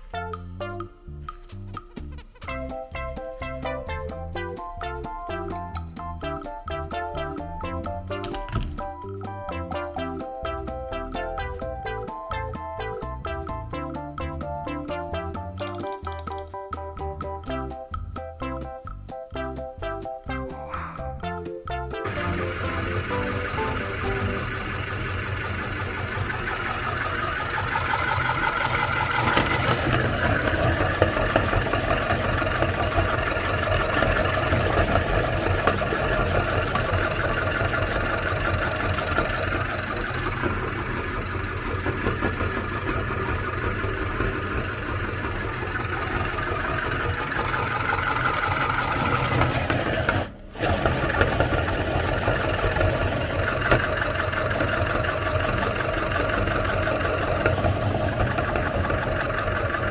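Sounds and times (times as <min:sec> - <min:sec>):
meat grinder motor grinding: 0:22.0 - 0:59.9.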